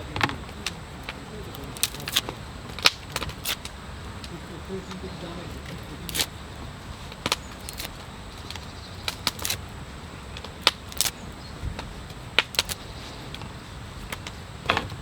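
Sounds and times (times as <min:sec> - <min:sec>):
sharp clicks and snaps: 0:00.1 - 0:04.4, 0:06.1 - 0:06.4, 0:07.1 - 0:09.6, 0:10.4 - 0:11.2, 0:11.8 - 0:13.5.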